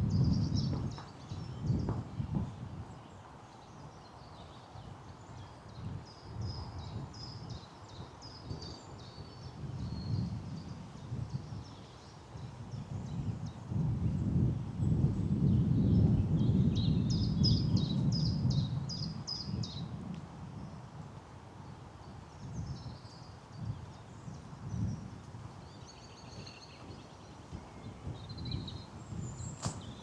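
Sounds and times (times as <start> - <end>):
small birds chirping: 25.6 - 30.0.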